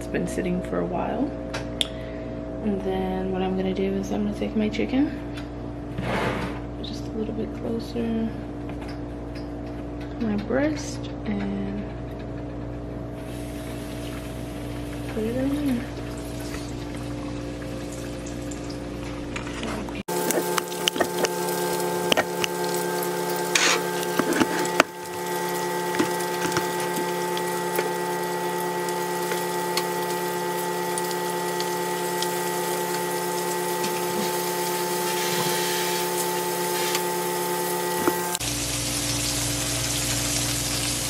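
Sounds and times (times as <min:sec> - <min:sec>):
steady hum: 0:00.0 - 0:41.0
chicken sizzling in hot grease: 0:20.1 - 0:41.0.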